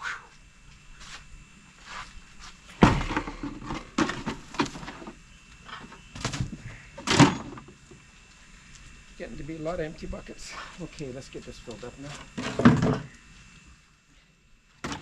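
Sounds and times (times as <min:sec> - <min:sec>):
scrapes rustles and thumps: 0:01.0 - 0:08.0, 0:12.1 - 0:13.1.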